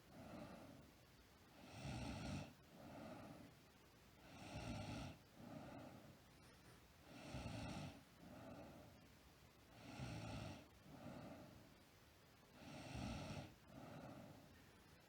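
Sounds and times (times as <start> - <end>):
girl snoring: 7.2 - 8.0, 9.8 - 10.7, 12.6 - 14.2.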